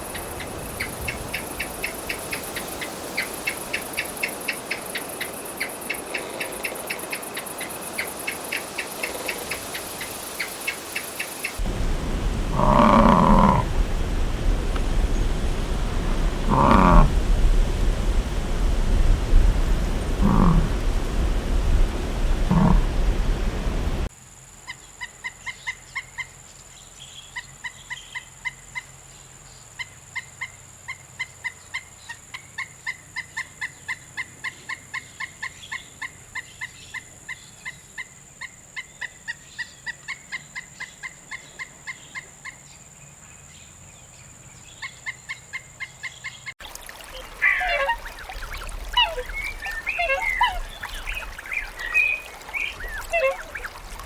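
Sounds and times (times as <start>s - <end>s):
overlapping honking calls: 11.6s - 24.1s
animal short pitched calls: 12.5s - 13.7s, 16.4s - 17.2s, 20.1s - 20.8s, 22.5s - 23.1s, 47.4s - 48.2s, 48.9s - 50.7s, 52.8s - 53.7s.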